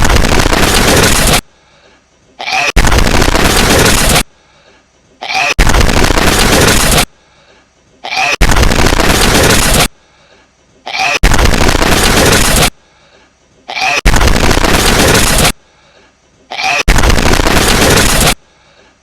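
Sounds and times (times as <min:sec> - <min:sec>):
hedgehog sneeze loud and distorted: 0:02.4 - 0:04.2, 0:05.2 - 0:07.1, 0:08.0 - 0:09.9, 0:10.9 - 0:12.7, 0:13.7 - 0:15.6, 0:16.5 - 0:18.4.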